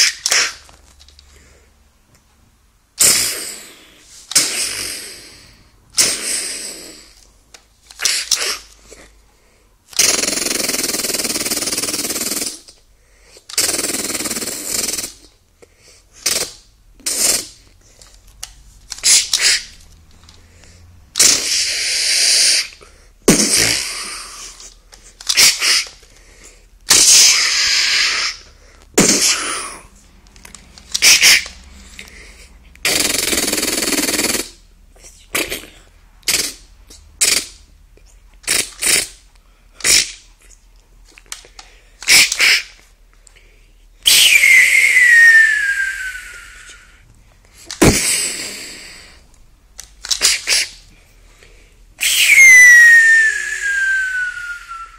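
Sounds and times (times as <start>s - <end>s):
person imitating gunshots: 3.0s - 5.4s, 6.0s - 7.1s, 10.0s - 12.7s, 13.5s - 15.3s, 19.0s - 19.7s, 21.2s - 22.7s, 23.3s - 24.7s, 25.3s - 26.0s, 26.9s - 28.4s, 29.0s - 29.9s, 30.9s - 31.5s, 32.8s - 34.6s, 35.3s - 37.6s, 38.4s - 39.2s, 39.8s - 40.3s, 42.1s - 42.8s, 47.7s - 49.0s, 50.1s - 50.8s
falling whistle: 44.1s - 47.0s, 52.0s - 54.9s.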